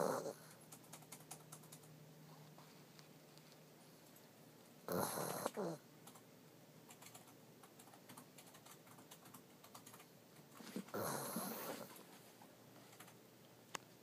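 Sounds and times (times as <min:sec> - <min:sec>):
dog snoring: 0:00.0 - 0:00.5, 0:04.9 - 0:05.8, 0:10.9 - 0:11.9
computer keyboard typing: 0:00.5 - 0:01.9, 0:06.0 - 0:06.2, 0:06.9 - 0:11.0, 0:12.9 - 0:13.2.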